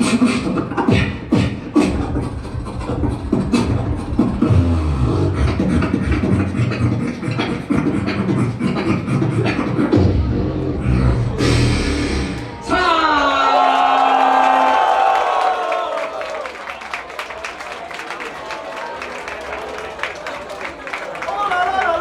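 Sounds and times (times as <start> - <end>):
person beatboxing: 0.0 - 12.6
hummed bass line: 0.0 - 12.8.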